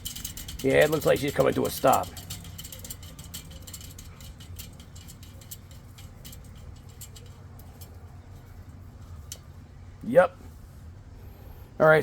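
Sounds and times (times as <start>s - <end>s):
spinning rim ticking and clicking: 0.0s - 9.5s
fan motor humming: 0.0s - 12.0s.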